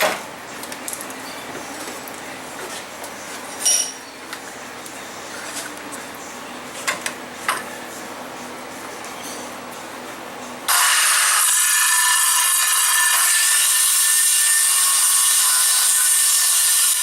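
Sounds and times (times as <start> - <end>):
metal tools clinking: 3.5 - 4.1.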